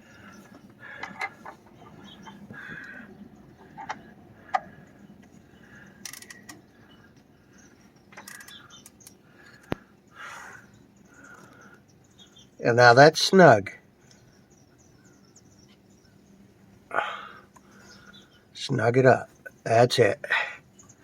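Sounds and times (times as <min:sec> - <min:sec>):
ratchet clicks: 0:06.0 - 0:06.6, 0:08.2 - 0:09.2.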